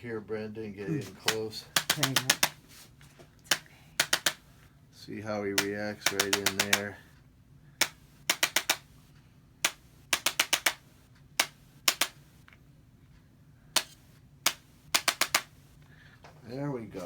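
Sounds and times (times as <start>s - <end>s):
adjusting instrument clicking: 1.2s - 2.6s, 3.4s - 4.4s, 5.6s - 7.0s, 7.8s - 8.9s, 9.6s - 10.8s, 11.4s - 12.6s, 13.8s - 15.5s.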